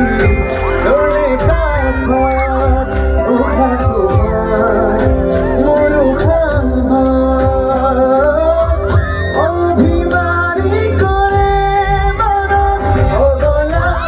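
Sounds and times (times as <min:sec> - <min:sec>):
instrumental backing with bass line: 0:00.0 - 0:14.0
solo voice singing: 0:00.0 - 0:14.0.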